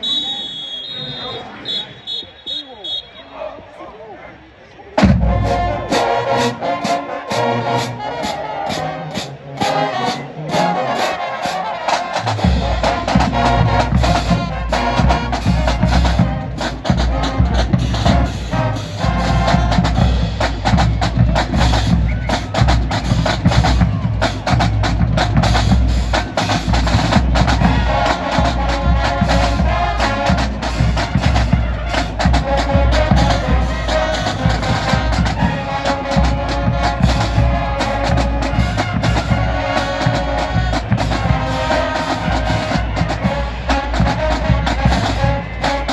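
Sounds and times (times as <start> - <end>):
marching band playing: 5.0 - 45.9
heavy bass drums: 12.3 - 45.9.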